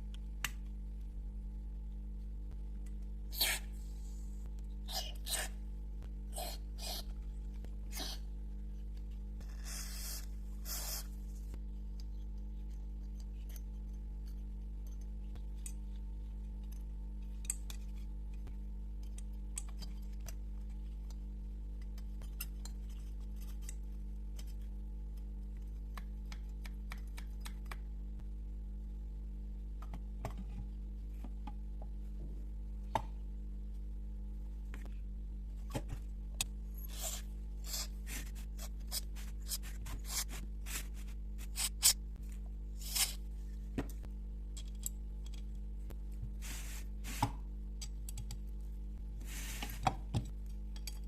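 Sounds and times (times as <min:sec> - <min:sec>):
low electrical hum: 0:00.0 - 0:51.0
short hissing bursts: 0:09.7 - 0:11.1.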